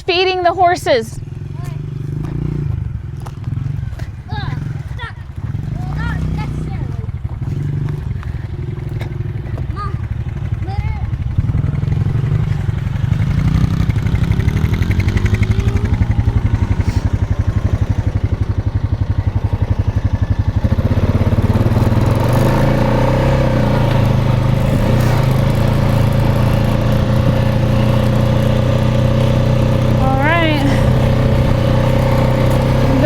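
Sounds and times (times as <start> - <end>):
four-wheeler engine running: 0.0 - 33.0.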